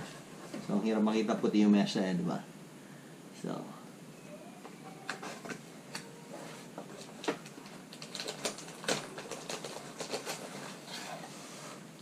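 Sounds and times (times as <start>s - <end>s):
packaging clicks and taps: 7.0s - 10.4s.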